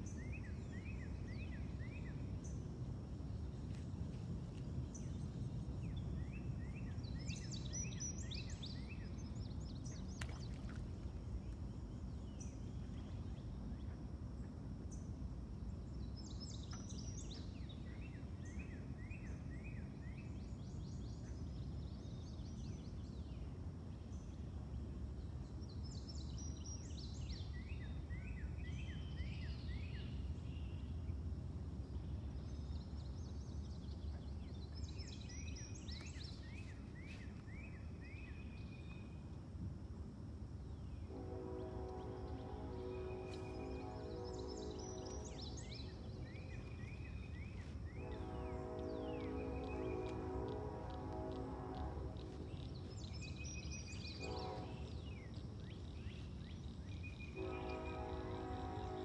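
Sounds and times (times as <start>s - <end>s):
songbird singing: 3.4s - 31.0s, 31.8s - 39.2s, 40.6s - 59.0s
low outdoor rumble: 40.8s - 59.0s.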